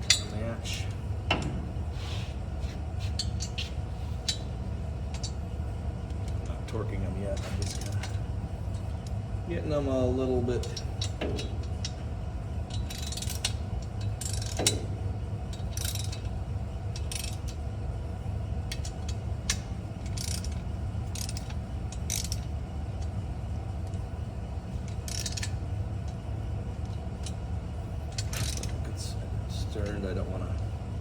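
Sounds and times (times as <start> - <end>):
low hum: 0.0 - 31.0
hand ratchet clicking: 12.8 - 13.6, 14.2 - 14.8, 17.0 - 17.6, 18.7 - 22.5, 24.9 - 25.5.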